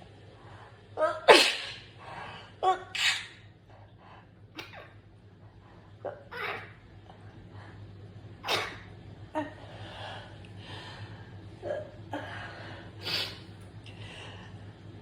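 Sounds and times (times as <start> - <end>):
breathing: 0.3 - 0.9, 2.0 - 2.6, 3.7 - 4.4, 7.4 - 8.0, 9.6 - 11.5, 12.2 - 14.8
person sneezing: 1.3 - 1.9, 2.9 - 3.4.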